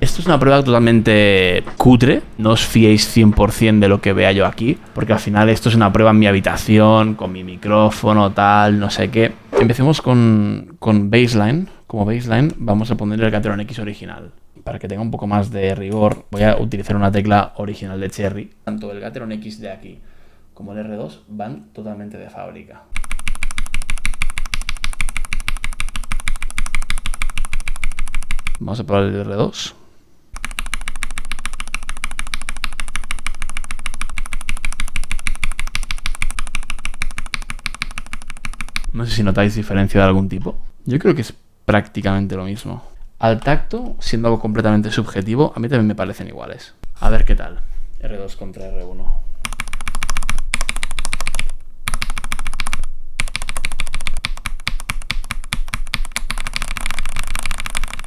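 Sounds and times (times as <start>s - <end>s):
fast mechanical keyboard typing: 23.0s - 28.6s, 30.4s - 38.9s, 49.4s - 58.0s.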